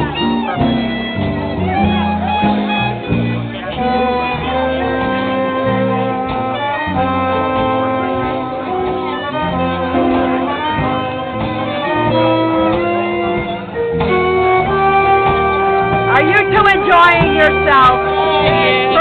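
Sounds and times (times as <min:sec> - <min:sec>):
live band playing: 0:00.0 - 0:19.0
moving bass line: 0:00.0 - 0:19.0
horn holding long notes: 0:01.9 - 0:19.0.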